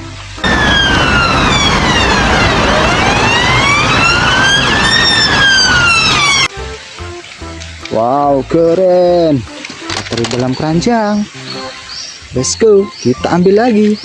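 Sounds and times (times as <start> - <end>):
police siren wailing: 0.4 - 6.5
steady rushing noise: 0.4 - 6.5.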